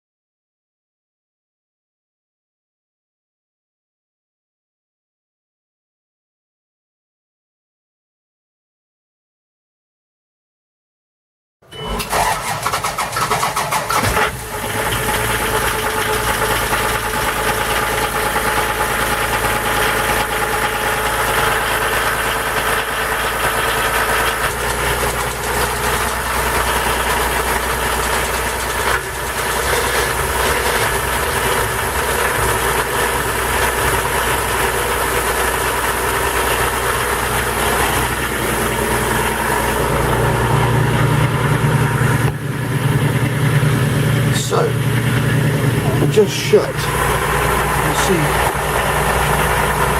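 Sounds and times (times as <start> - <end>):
boat engine idling: 12.2 - 49.9.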